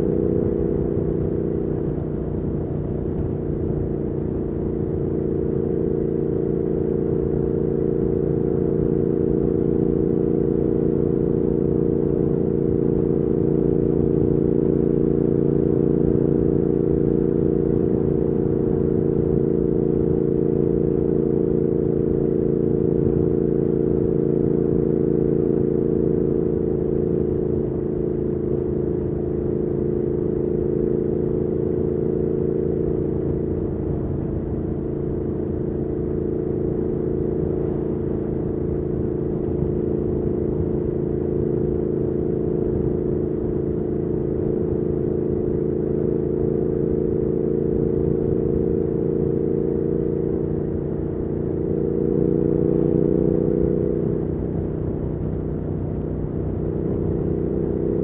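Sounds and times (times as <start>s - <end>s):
motorcycle engine cruising: 0.0s - 58.0s.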